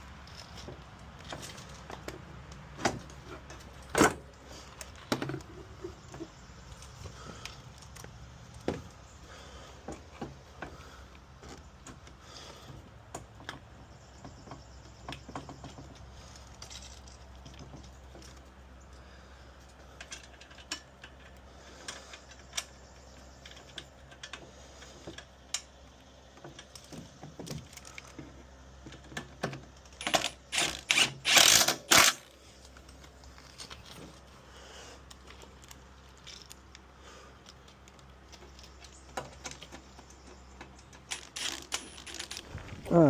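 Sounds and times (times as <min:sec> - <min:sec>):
tools and fasteners clinking: 0:19.7 - 0:34.2, 0:35.1 - 0:43.0
loud rattling bursts: 0:30.0 - 0:32.3.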